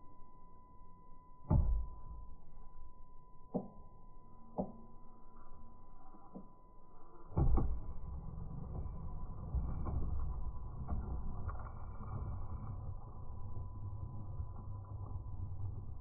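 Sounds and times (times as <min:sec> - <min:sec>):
rc truck motor whine: 0:07.1 - 0:16.0.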